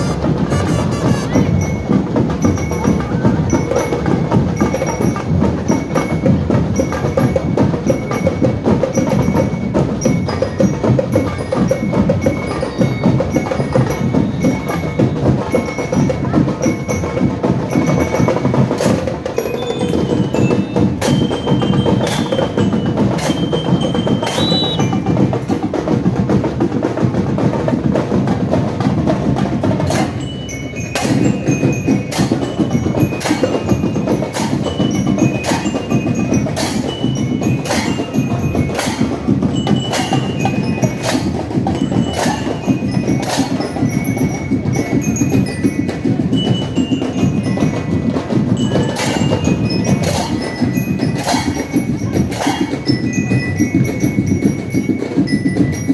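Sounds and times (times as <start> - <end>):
drum strikes: 0.0 - 6.2, 17.8 - 26.4, 27.8 - 55.8
marching band playing: 0.0 - 55.9
high bell-like notes: 19.4 - 25.4, 30.0 - 47.8.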